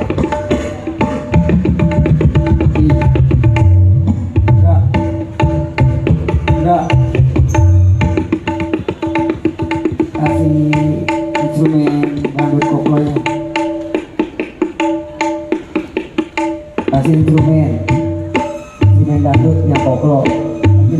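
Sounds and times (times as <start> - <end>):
hand drums played fast: 0.0 - 20.9.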